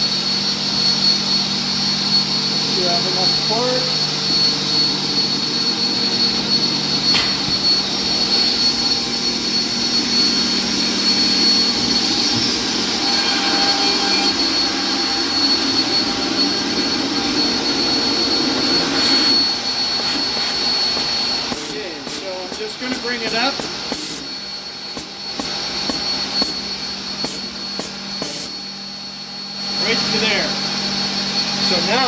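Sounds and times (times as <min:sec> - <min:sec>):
machine whirring with high whine: 0:00.0 - 0:32.0
sharp click: 0:07.1 - 0:07.6.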